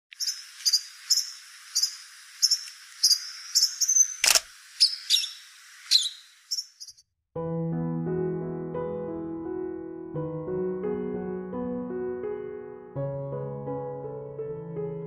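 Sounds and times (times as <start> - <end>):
bird chirping: 0.1 - 7.0
sharp click: 4.2 - 4.5.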